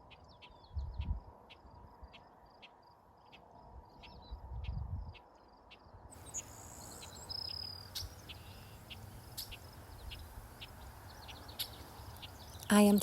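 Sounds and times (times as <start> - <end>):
crickets chirping: 5.5 - 13.0
bird chirps: 6.1 - 13.0.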